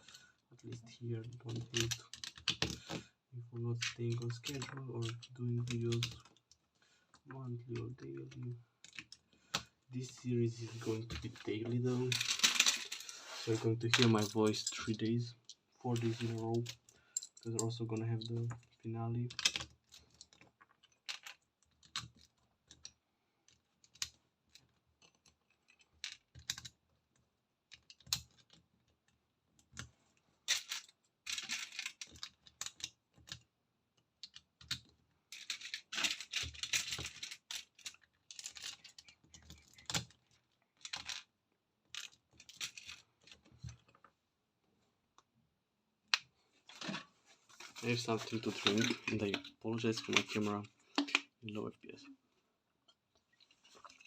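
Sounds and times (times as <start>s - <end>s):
loose plastic parts rattling: 0.0s - 6.4s, 7.2s - 22.9s, 30.5s - 33.4s, 34.2s - 41.3s, 41.9s - 44.1s, 46.6s - 51.4s
plastic bricks clicking: 48.1s - 51.4s.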